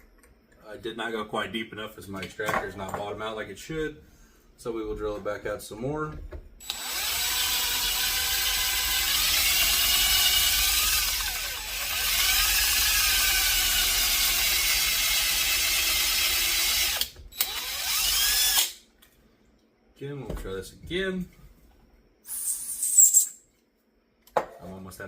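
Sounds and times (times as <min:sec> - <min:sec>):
hand drill whining: 0:06.6 - 0:18.8.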